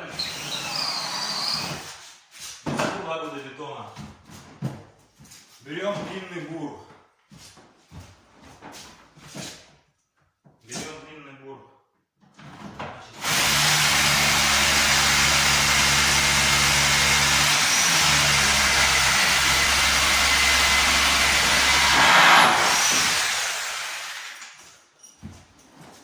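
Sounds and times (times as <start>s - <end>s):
rotary hammer drilling: 0.0s - 1.8s, 13.2s - 24.6s.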